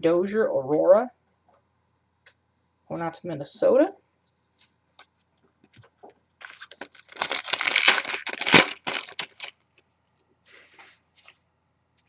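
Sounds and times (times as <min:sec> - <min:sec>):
foil wrapper tearing and crinkling: 0:06.4 - 0:09.6.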